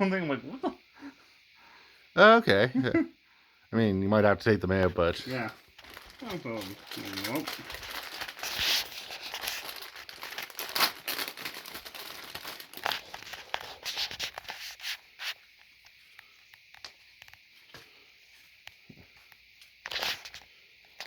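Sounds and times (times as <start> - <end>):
packaging crinkling and rustling: 5.2 - 15.4, 19.8 - 21.0.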